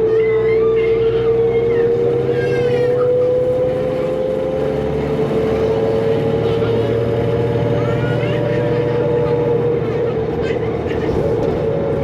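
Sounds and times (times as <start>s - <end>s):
diesel bus engine running: 0.0s - 12.0s.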